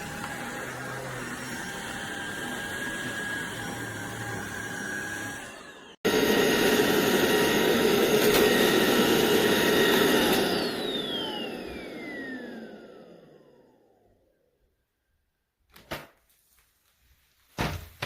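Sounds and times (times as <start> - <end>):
stick vacuum running: 0.0 - 14.2.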